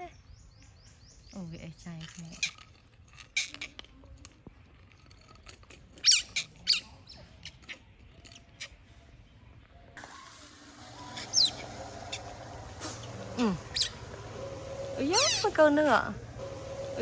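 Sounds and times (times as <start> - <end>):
otter squeaking chirps: 6.0 - 8.8, 10.8 - 17.0.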